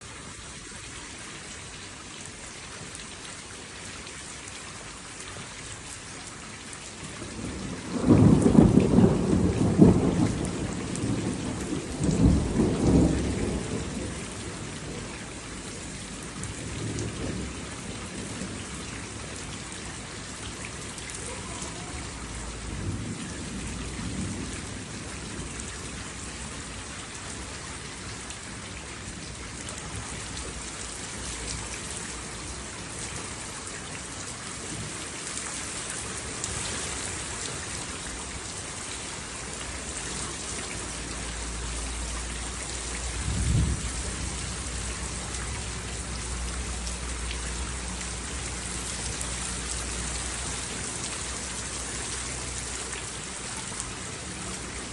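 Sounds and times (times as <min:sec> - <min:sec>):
steady rain: 0:00.0 - 0:54.9
rolling thunder: 0:07.3 - 0:19.4, 0:43.0 - 0:44.8
distant thunder rumbles: 0:07.3 - 0:19.5, 0:43.0 - 0:46.0.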